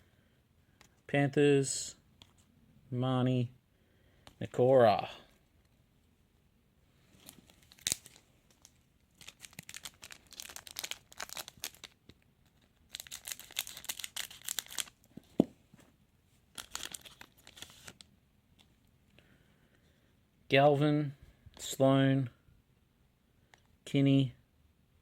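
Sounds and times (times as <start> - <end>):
wrapper tearing and crinkling: 7.5 - 15.0, 16.6 - 18.0.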